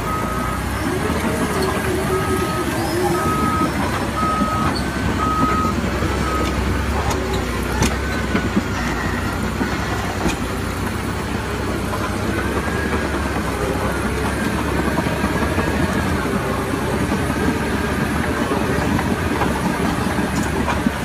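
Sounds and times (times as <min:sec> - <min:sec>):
heavy vehicle engine rumbling: 0:00.0 - 0:21.0.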